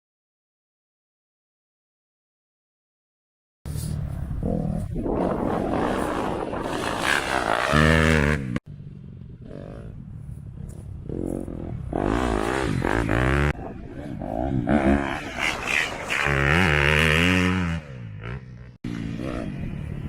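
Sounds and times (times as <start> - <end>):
dirt bike engine revving: 4.4 - 20.0.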